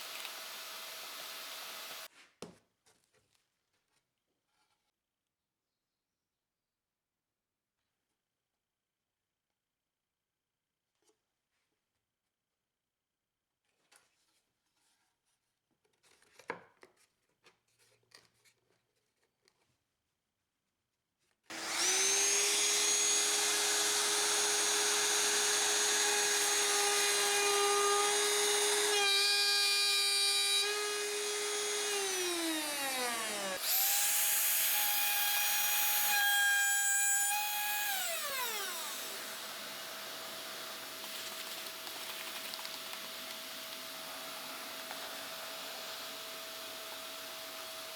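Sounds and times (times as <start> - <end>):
trim router whining: 21.5 - 41.8, 42.8 - 47.9
dust-collection vacuum running: 21.5 - 47.9.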